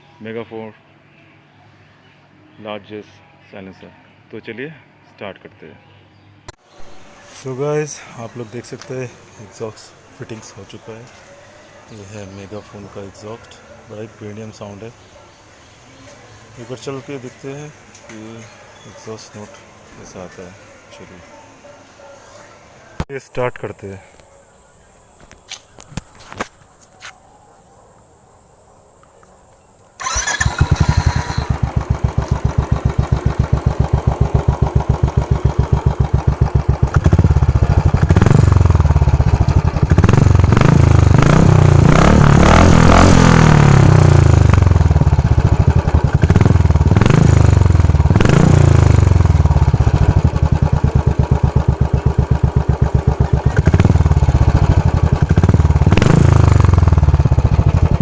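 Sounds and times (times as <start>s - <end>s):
motorcycle engine revving: 6.7s - 21.2s, 30.0s - 58.0s.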